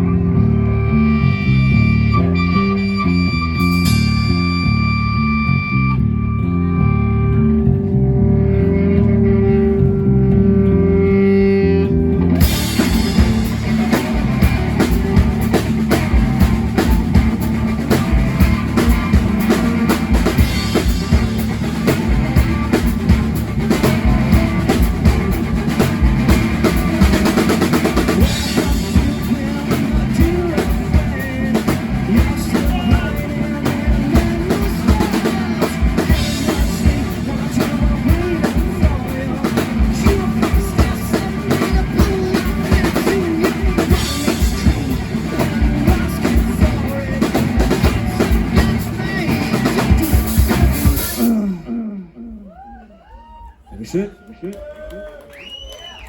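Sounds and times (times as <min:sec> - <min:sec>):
live band playing: 0:00.0 - 0:52.5
drum kit: 0:03.4 - 0:05.4, 0:12.2 - 0:51.8.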